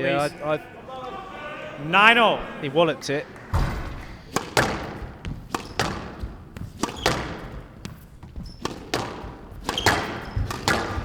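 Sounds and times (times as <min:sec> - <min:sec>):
squash ball striking rackets and walls: 0:03.3 - 0:11.0.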